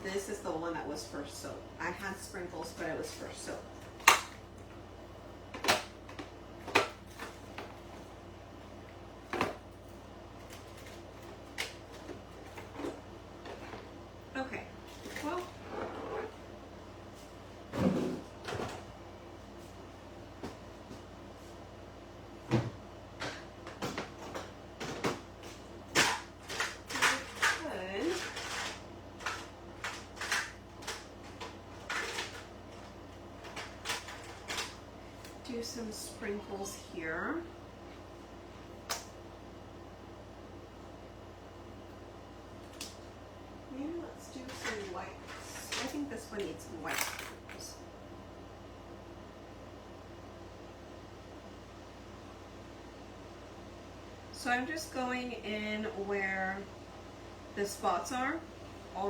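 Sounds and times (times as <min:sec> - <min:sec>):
craft supplies rustling and clicking: 0:23.2 - 0:35.4, 0:44.4 - 0:47.6.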